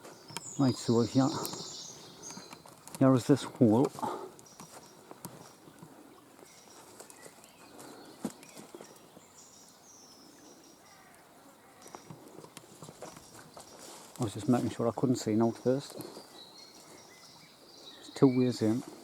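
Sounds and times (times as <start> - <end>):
small birds calling: 0.0 - 19.0
soft clicks and rustles: 2.2 - 3.1, 11.8 - 14.7.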